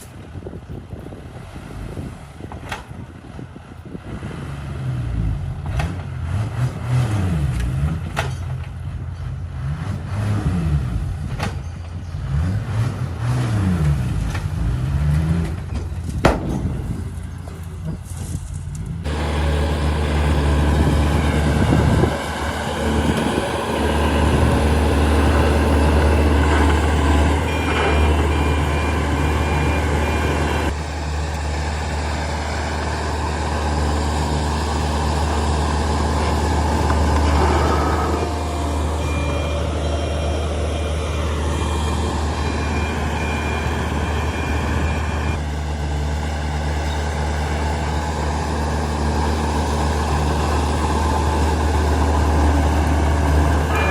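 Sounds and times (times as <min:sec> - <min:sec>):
heavy diesel engine running: 0:13.9 - 0:53.9.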